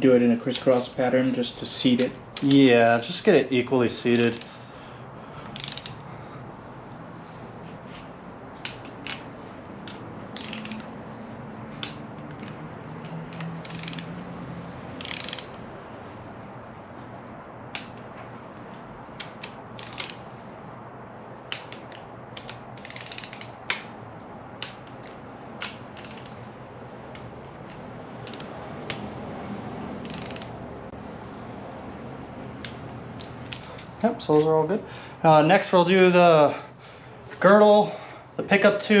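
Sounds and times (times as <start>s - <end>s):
ratchet clicking: 4.2s - 4.6s, 5.5s - 6.0s, 9.9s - 11.0s, 11.8s - 14.3s, 14.9s - 15.6s, 19.2s - 20.3s, 21.5s - 23.9s, 24.6s - 26.5s, 27.1s - 29.0s, 30.0s - 30.6s, 32.6s - 34.0s
torque wrench single clicks: 13.3s - 14.1s, 15.0s - 15.6s, 30.0s - 30.5s.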